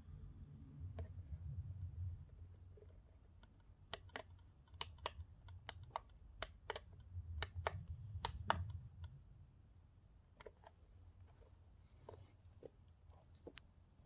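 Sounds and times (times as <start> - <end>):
low hum: 0.0 - 3.7, 5.2 - 10.3.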